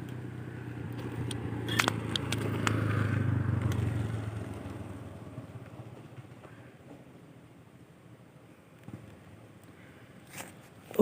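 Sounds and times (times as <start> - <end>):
vehicle engine passing by: 0.0 - 6.7
sharp clicks: 1.0 - 2.8.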